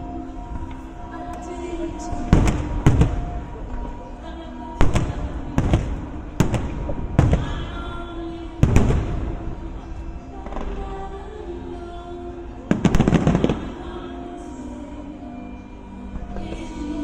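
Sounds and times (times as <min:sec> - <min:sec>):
music playing: 0:00.0 - 0:17.0
fireworks bangs: 0:02.2 - 0:03.8, 0:04.8 - 0:08.0, 0:08.6 - 0:09.7, 0:12.7 - 0:13.8.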